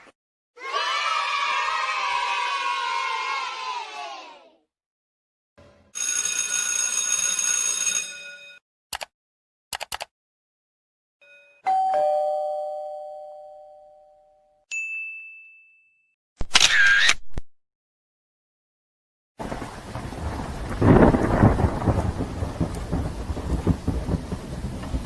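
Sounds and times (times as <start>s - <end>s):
quick clicks: 8.9s - 9.1s, 9.7s - 10.1s
short high ding: 11.2s - 16.1s
two-tone doorbell chime: 11.2s - 16.1s.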